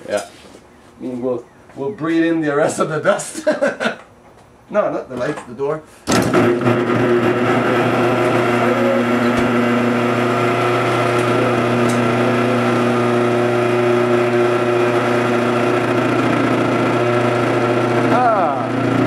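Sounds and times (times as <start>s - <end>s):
garage door opener motor humming: 6.1s - 19.0s.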